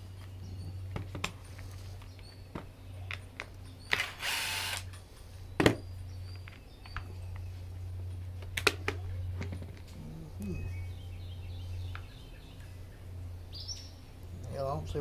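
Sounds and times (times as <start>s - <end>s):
steady low hum: 0.0s - 15.0s
cordless drill whirring: 3.9s - 4.9s.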